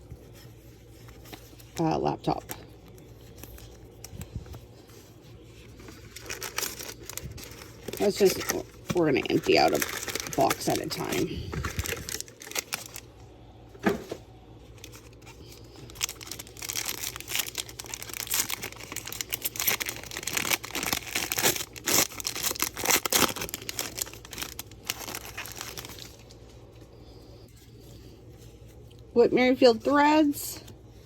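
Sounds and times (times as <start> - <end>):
card wrappers tearing and crinkling: 0.2 - 13.1, 14.7 - 26.5.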